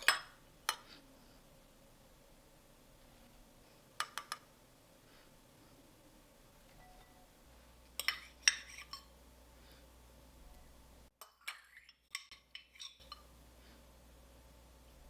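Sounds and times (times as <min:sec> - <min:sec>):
utensil clinking against dishes: 0:00.0 - 0:00.9, 0:06.7 - 0:09.1, 0:11.2 - 0:13.4.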